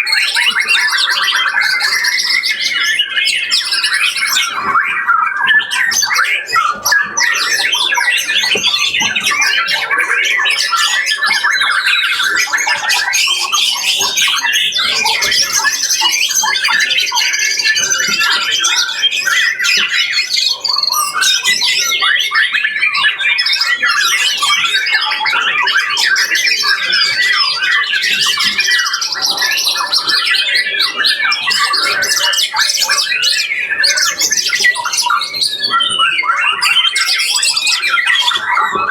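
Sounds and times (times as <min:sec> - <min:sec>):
many songbirds singing: 0:00.0 - 0:38.9.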